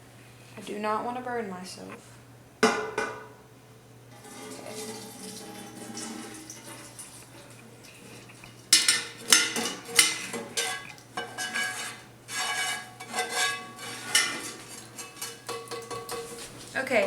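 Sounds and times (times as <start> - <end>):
metal utensil clanking on cookware: 8.7 - 16.5.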